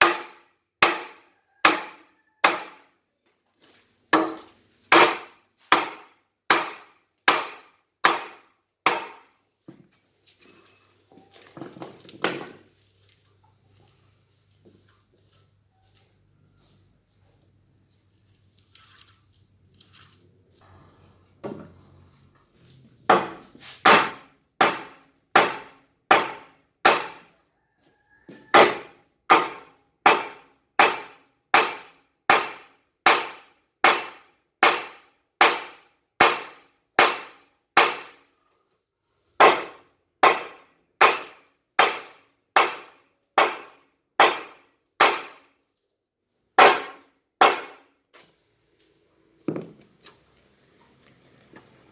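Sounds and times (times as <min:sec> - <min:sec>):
hammer striking metal: 0:04.2 - 0:09.3, 0:46.6 - 0:47.8.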